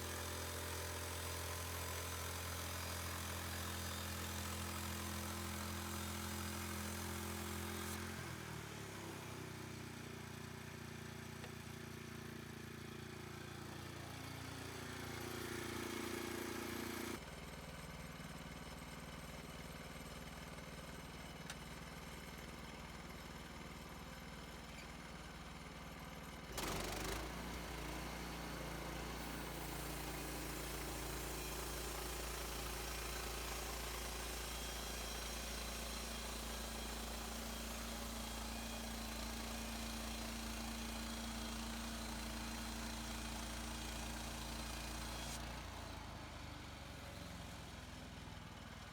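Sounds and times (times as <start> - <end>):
engine running: 26.5 - 45.8.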